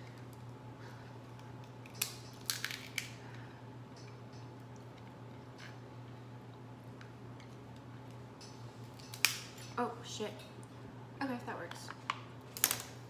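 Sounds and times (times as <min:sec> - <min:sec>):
steady low hum: 0:00.0 - 0:13.0
seafood shells cracking by hand: 0:01.3 - 0:03.4, 0:08.9 - 0:09.7, 0:12.5 - 0:13.0.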